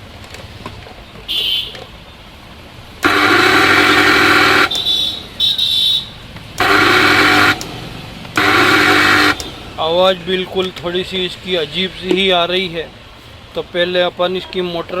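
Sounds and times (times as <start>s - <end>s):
mixer grinder motor whining: 3.0s - 5.4s, 6.4s - 9.9s.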